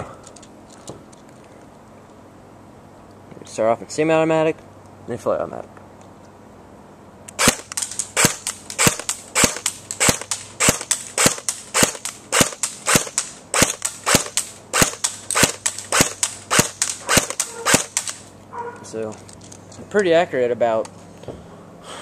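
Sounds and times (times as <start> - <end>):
airsoft rifle firing single shots: 7.4 - 18.2.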